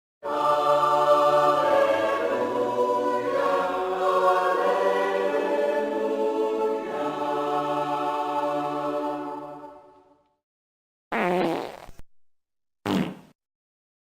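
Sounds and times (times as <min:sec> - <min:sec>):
choir singing held chords: 0:00.2 - 0:10.2.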